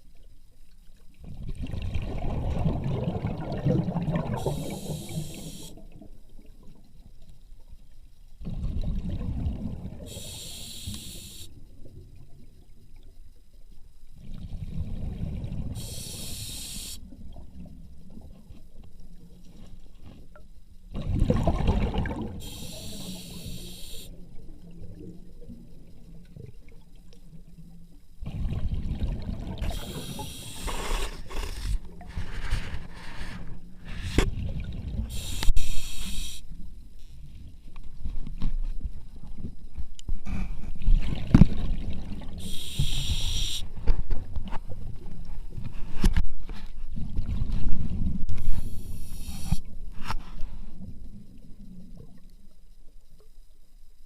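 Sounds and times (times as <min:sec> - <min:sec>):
water gurgling and sloshing: 0:00.0 - 0:54.0
air hissing: 0:04.4 - 0:05.8, 0:10.1 - 0:11.5, 0:15.8 - 0:17.0, 0:22.4 - 0:24.1, 0:29.7 - 0:31.8, 0:35.1 - 0:36.5, 0:42.4 - 0:43.6, 0:48.6 - 0:49.7.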